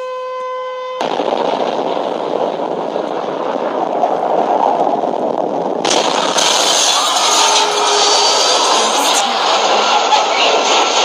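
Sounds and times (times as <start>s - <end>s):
loud rushing roar: 5.8s - 11.0s.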